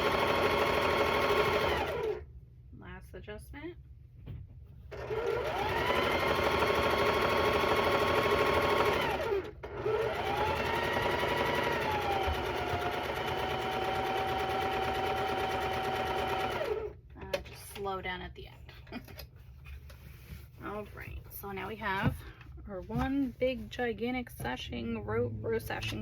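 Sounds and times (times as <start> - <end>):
sewing machine motor whine: 0.0 - 2.2, 4.9 - 17.0.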